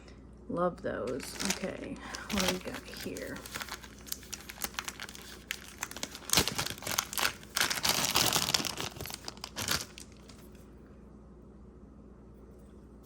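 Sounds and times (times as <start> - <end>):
packaging crinkling and rustling: 1.0 - 10.7.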